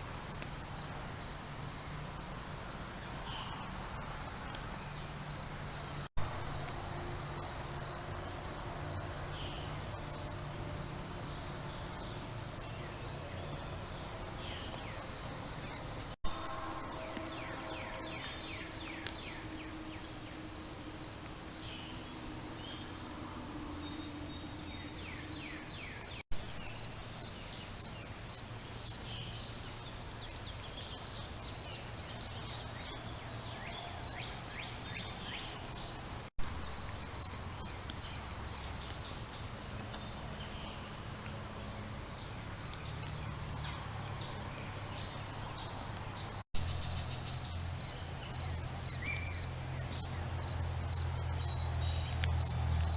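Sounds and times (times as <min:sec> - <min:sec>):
crickets chirping: 0:26.4 - 0:29.6, 0:34.0 - 0:39.7, 0:46.6 - 0:52.9.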